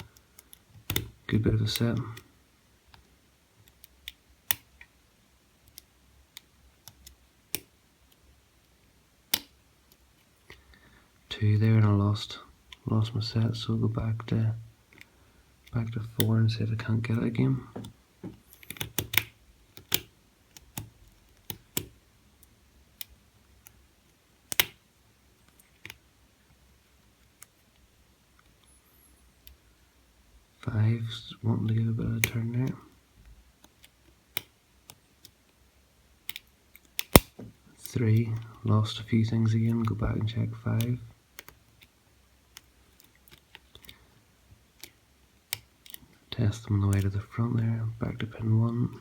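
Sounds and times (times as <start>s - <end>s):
lock pick clicking: 18.5s - 21.9s, 24.5s - 24.8s, 37.0s - 37.4s
lock pick metal clicks: 24.5s - 24.8s, 36.3s - 37.4s.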